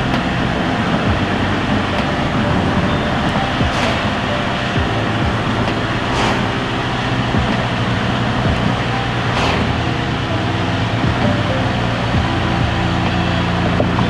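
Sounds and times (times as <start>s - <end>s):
car engine hum: 0.0s - 14.0s
tyre and road noise: 0.0s - 14.0s
brief rush of noise: 5.6s - 6.8s, 9.3s - 10.3s.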